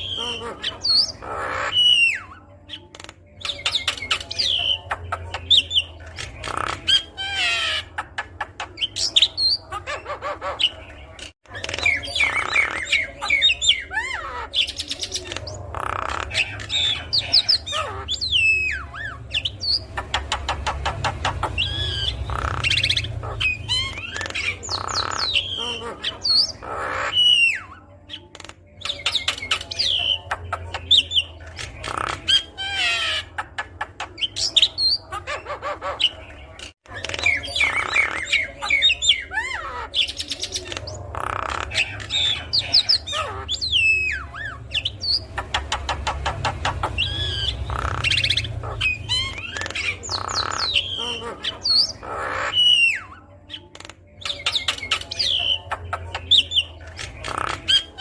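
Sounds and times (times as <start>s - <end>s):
bird singing: 0.0s - 58.0s.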